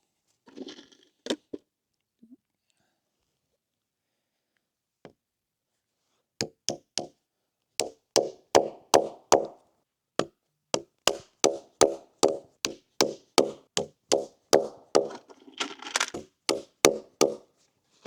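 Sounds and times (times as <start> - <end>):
hammer blows on wood: 11.1 - 15.1.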